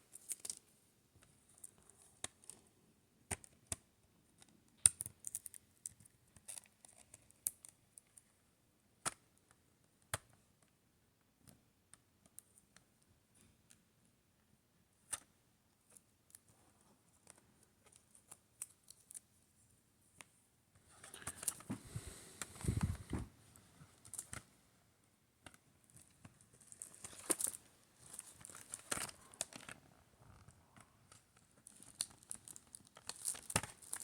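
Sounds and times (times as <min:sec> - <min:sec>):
rustling of package: 0:26.5 - 0:29.7, 0:31.6 - 0:34.0.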